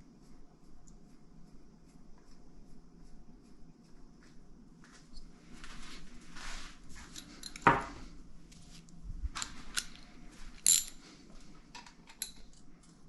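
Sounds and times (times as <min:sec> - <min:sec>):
small clicks and scrapes: 0:11.7 - 0:13.0.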